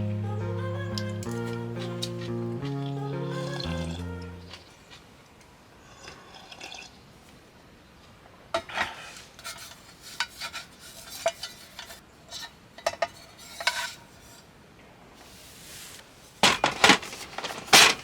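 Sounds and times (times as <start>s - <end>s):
metal utensil scraping cookware: 8.8s - 14.5s.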